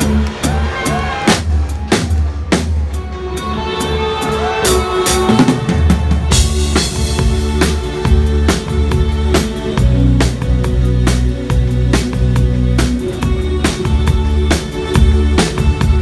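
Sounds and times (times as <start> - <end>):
bass: 0.0 - 16.0
drum kit beat: 0.0 - 16.0.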